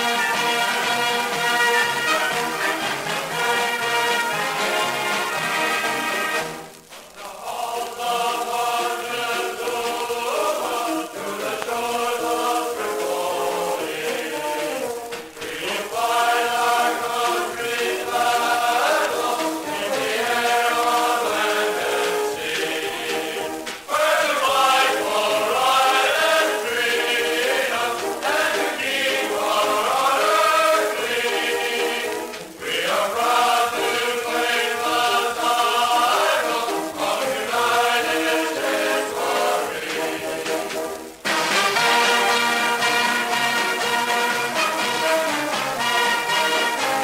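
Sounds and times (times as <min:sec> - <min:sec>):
choir singing: 0:00.0 - 0:47.0.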